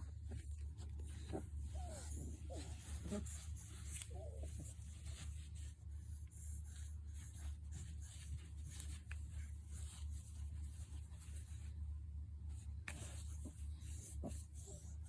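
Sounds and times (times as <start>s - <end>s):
light scratching and rubbing: 0.0s - 11.8s
low steady hum: 0.0s - 15.0s.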